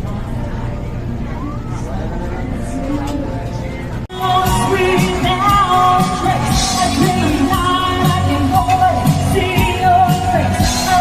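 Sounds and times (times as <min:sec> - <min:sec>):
pop song with singer and band: 0:01.4 - 0:11.0.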